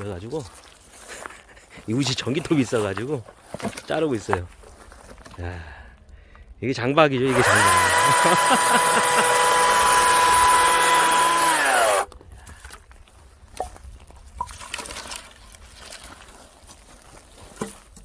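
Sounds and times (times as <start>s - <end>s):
electric chainsaw whining: 7.2s - 12.1s.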